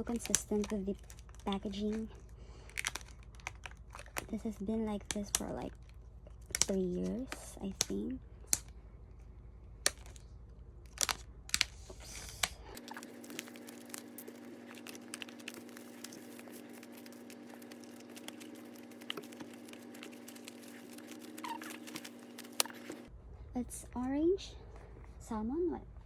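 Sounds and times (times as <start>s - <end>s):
plastic shrink wrap crinkling: 0.0s - 8.7s, 9.8s - 23.1s.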